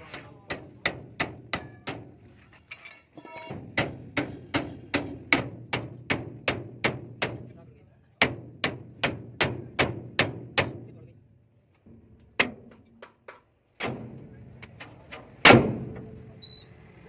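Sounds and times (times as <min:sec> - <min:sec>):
hand hammer striking metal: 0:00.0 - 0:02.2, 0:03.5 - 0:07.5, 0:08.2 - 0:10.8.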